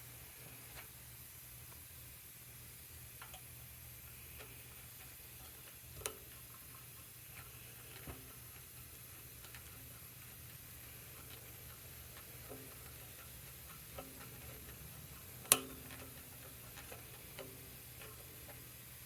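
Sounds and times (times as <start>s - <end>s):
light clicks and taps: 3.2s - 3.5s, 4.4s - 18.7s.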